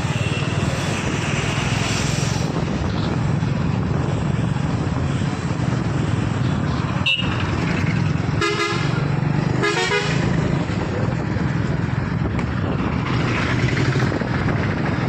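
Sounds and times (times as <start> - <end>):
outdoor noise: 0.0 - 15.0
vehicle horn toots: 7.0 - 7.4, 8.4 - 8.9, 9.6 - 10.2.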